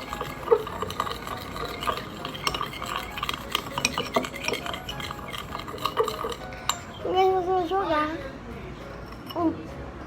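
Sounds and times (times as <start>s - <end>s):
spoon clinking against container: 0.0s - 7.4s.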